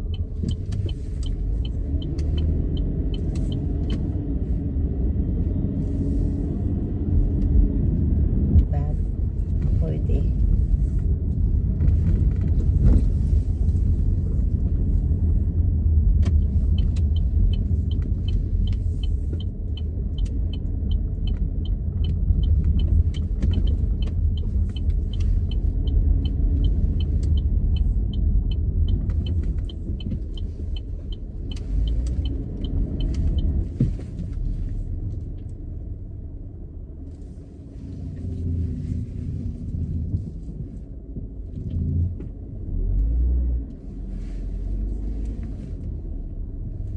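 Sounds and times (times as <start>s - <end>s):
turn signal ticking: 0.0s - 7.6s, 8.5s - 35.8s
road and engine rumble: 0.0s - 46.9s.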